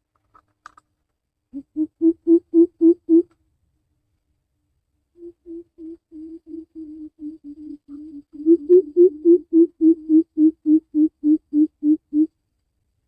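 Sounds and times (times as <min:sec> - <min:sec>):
bird giving deep hoots: 0:01.5 - 0:03.3, 0:05.2 - 0:12.3.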